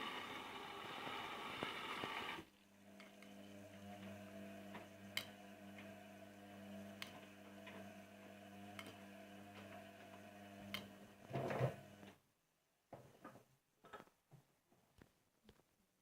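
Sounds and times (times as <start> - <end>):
washing machine motor hum: 0.0 - 12.2.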